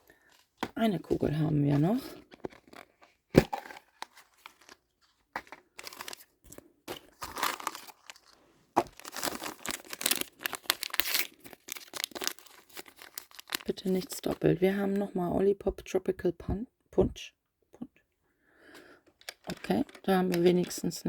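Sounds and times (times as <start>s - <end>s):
plastic wrapping crinkling and tearing: 1.1s - 14.3s, 19.2s - 21.0s.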